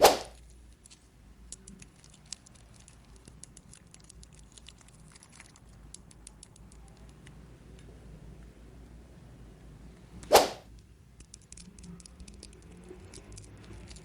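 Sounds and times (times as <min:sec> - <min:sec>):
plastic toy pieces clicking: 0:00.3 - 0:07.4, 0:10.7 - 0:14.0.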